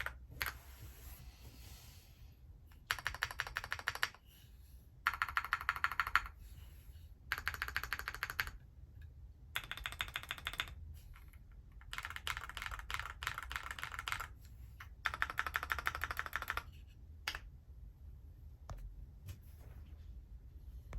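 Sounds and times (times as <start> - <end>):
mechanical keyboard typing: 0.0 - 0.6, 2.8 - 4.2, 5.0 - 6.4, 7.3 - 8.6, 9.5 - 16.7.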